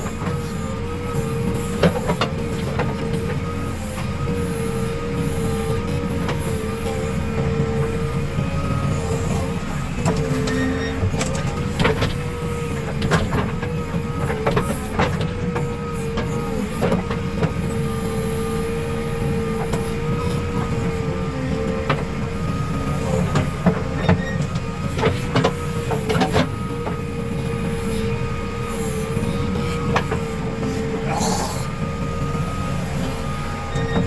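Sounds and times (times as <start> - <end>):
diesel engine whining under load: 0.0 - 34.0.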